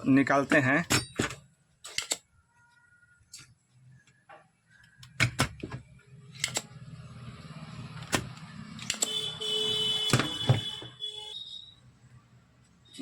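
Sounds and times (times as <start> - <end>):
tools clicking on circuit board: 1.9 - 2.3.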